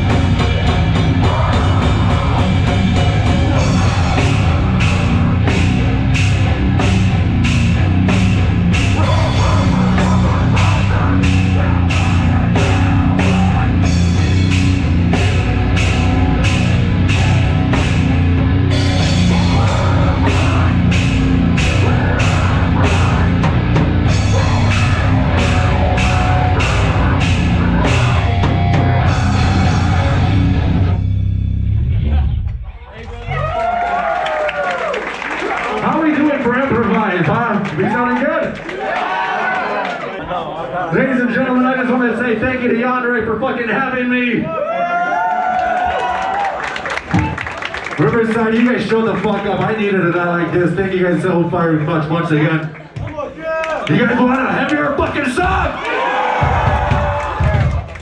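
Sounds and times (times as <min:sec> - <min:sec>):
heavy metal band playing live: 0:00.0 - 0:32.5.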